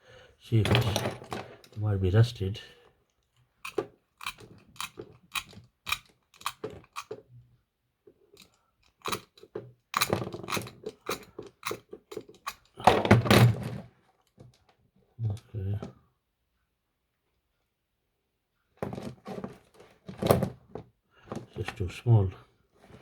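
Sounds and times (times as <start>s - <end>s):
small tools clicking and tapping: 3.3s - 7.3s, 8.3s - 12.8s.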